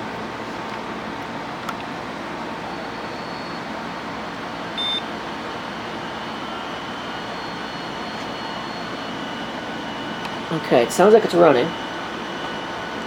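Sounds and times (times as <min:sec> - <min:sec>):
hard drive whine: 0:00.0 - 0:13.0
steady hum: 0:00.0 - 0:13.0
short high beep: 0:04.8 - 0:05.0.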